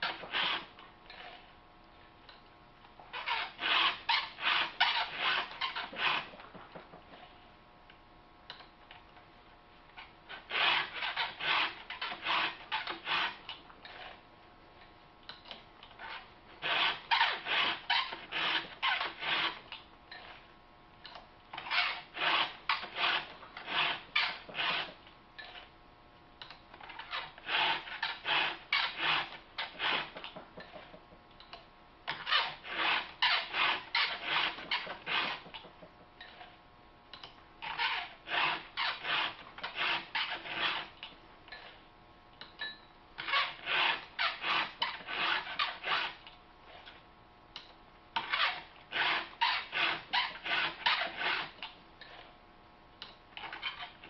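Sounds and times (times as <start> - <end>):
file rasping on chain teeth: 0.0 - 1.4, 3.1 - 6.6, 10.3 - 14.2, 16.0 - 20.4, 21.6 - 25.6, 26.9 - 31.1, 32.1 - 36.5, 37.6 - 41.8, 43.2 - 46.9, 48.2 - 52.3.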